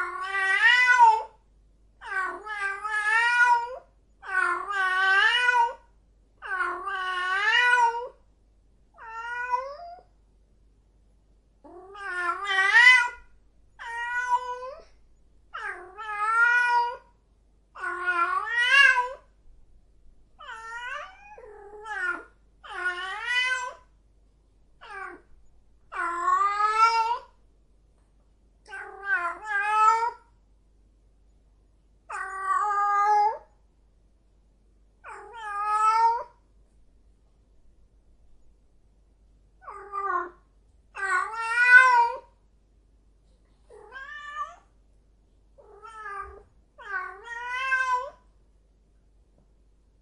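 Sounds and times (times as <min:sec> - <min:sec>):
cat yowling: 0:00.0 - 0:01.4, 0:02.0 - 0:08.2, 0:09.0 - 0:10.1, 0:11.6 - 0:13.2, 0:13.8 - 0:14.9, 0:15.6 - 0:17.1, 0:17.8 - 0:19.3, 0:20.4 - 0:23.9, 0:24.8 - 0:25.3, 0:25.9 - 0:27.3, 0:28.7 - 0:30.2, 0:32.1 - 0:33.5, 0:35.0 - 0:36.4, 0:39.6 - 0:40.4, 0:41.0 - 0:42.3, 0:43.7 - 0:44.7, 0:45.6 - 0:48.2.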